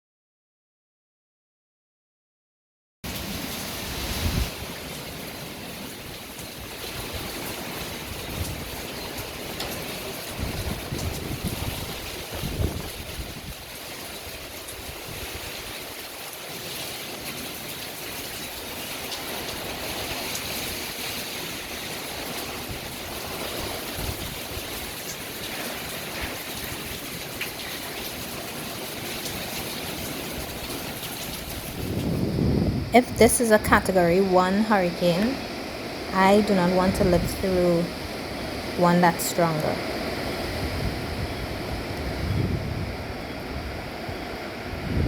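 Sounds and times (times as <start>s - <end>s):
low wind gusts: 3.1s - 9.6s, 10.3s - 13.7s, 30.4s - 33.2s, 39.7s - 45.0s
heavy rain pouring: 3.1s - 33.2s.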